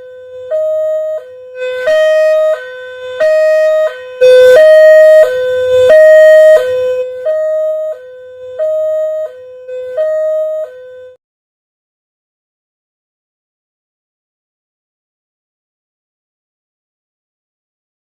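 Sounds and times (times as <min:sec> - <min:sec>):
two-tone level-crossing siren: 0:00.0 - 0:11.2.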